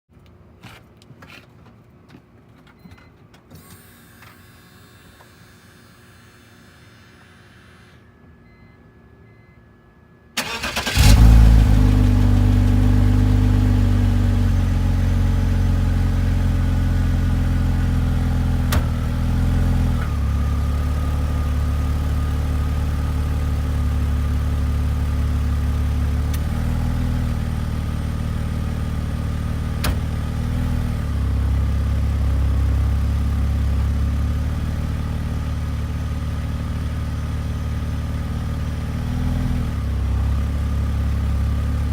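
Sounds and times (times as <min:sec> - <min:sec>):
car engine starting and idling: 0:10.3 - 0:41.9.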